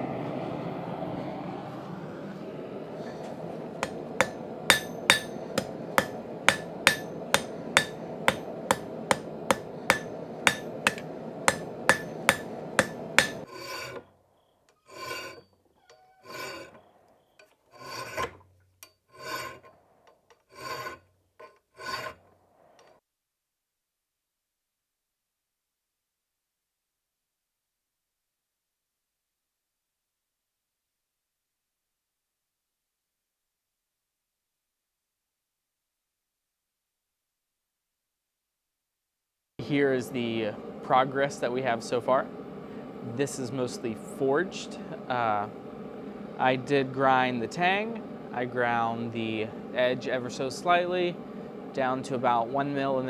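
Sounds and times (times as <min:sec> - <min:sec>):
steady rushing noise: 0:00.0 - 0:13.4
scraping strokes on steel: 0:02.9 - 0:14.1, 0:14.8 - 0:16.9, 0:17.7 - 0:22.8
hammer striking steel on anvil: 0:03.0 - 0:13.5.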